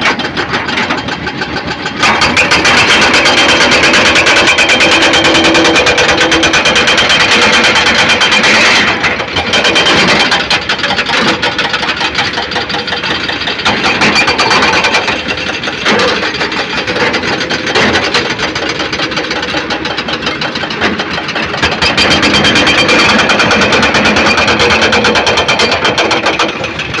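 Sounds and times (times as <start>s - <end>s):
construction machinery engine: 0.0s - 27.0s.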